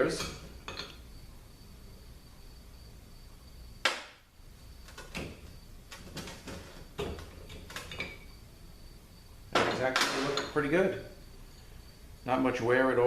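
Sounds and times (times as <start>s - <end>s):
metal knocks and clinks: 0.2s - 1.0s, 6.1s - 8.3s, 9.6s - 10.6s.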